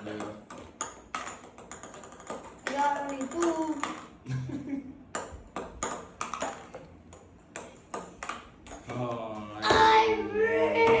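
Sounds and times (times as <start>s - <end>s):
table tennis ball clicking: 0.0s - 4.2s, 5.1s - 8.8s.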